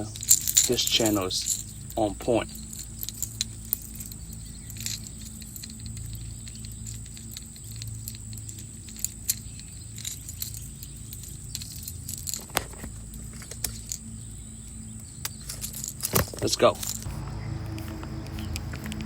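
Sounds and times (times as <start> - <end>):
fishing lure clicking and rattling: 0.0 - 14.2
steady low hum: 0.0 - 19.0.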